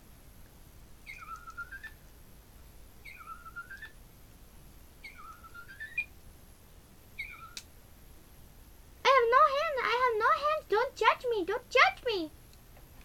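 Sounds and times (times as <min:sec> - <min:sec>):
pet bird whistling: 0:01.0 - 0:02.0, 0:03.0 - 0:04.0, 0:05.0 - 0:06.1, 0:07.2 - 0:07.6.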